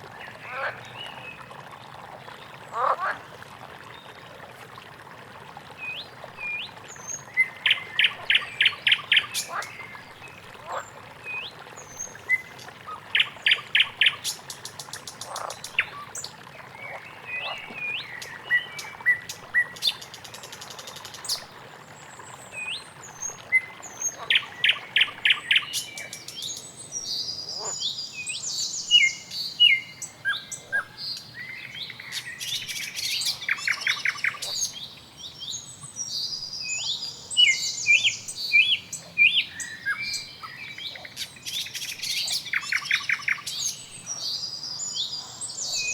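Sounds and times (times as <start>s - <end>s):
songbirds chirping and trilling: 22.3s - 45.9s.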